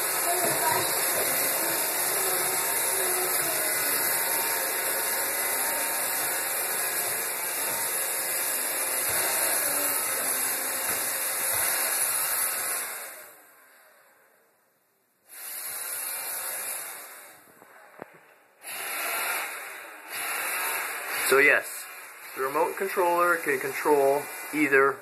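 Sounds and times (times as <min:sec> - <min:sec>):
robot vacuum whirring: 0:00.0 - 0:13.4, 0:15.3 - 0:25.0.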